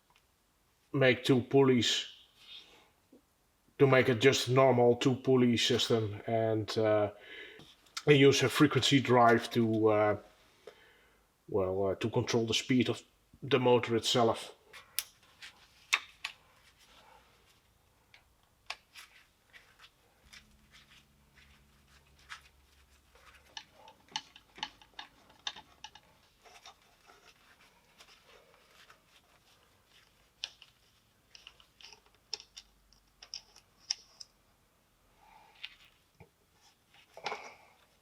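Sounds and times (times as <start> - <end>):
hand tools and metal parts clinking: 21.5 - 28.2, 29.9 - 34.4.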